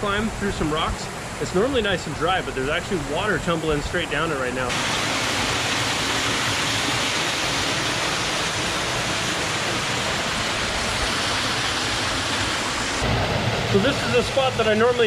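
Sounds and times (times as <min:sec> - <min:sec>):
water rushing down rock chute: 0:04.5 - 0:15.0.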